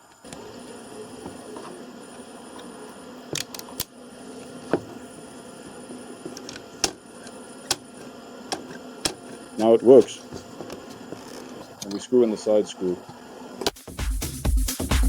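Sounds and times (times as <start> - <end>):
steady low hum: 0.0 - 13.7
plastic parts clicking and tapping: 3.3 - 3.9.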